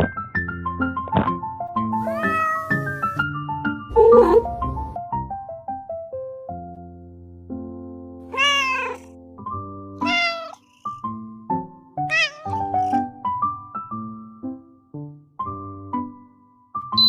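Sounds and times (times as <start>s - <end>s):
light background music: 0.0s - 17.0s
kitten meowing: 2.0s - 3.2s, 8.3s - 9.1s, 10.0s - 11.0s, 12.1s - 13.1s.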